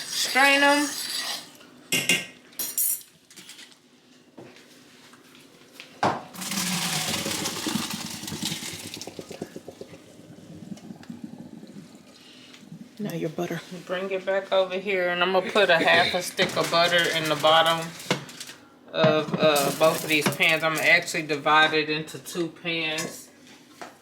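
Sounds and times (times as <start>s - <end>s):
water pouring into a strainer: 6.4s - 13.0s.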